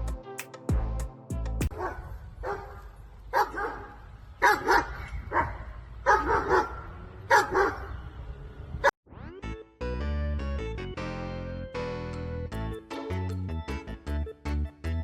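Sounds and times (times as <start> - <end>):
dog barking: 1.7 - 8.0.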